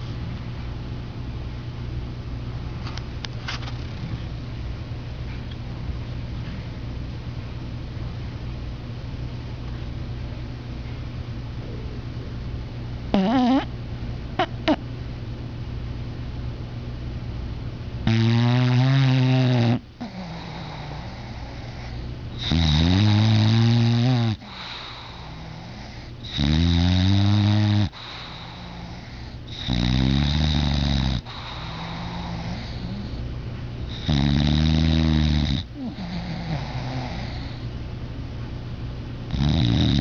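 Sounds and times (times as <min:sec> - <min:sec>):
dog snoring: 0:13.1 - 0:13.7, 0:18.0 - 0:33.2, 0:33.9 - 0:37.7, 0:39.3 - 0:40.0
dog breathing: 0:18.2 - 0:37.7.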